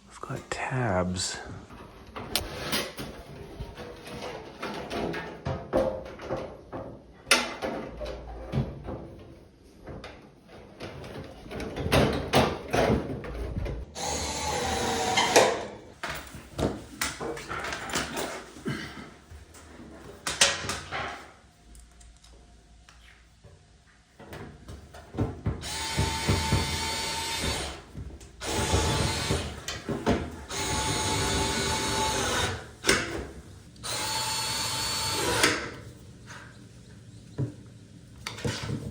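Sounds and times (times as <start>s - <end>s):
cordless screwdriver running: 25.6s - 27.7s, 28.4s - 29.5s, 33.8s - 35.6s.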